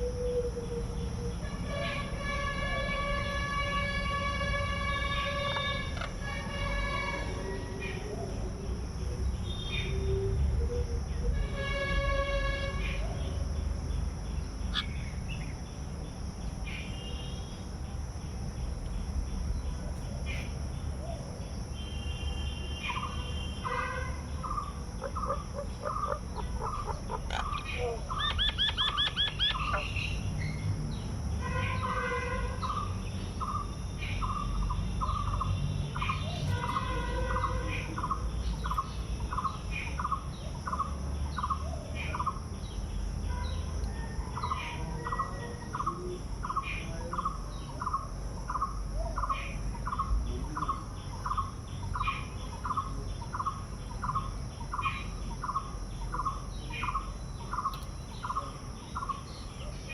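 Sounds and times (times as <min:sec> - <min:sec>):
birds calling and chirping: 0:00.0 - 0:11.8, 0:12.6 - 0:59.9.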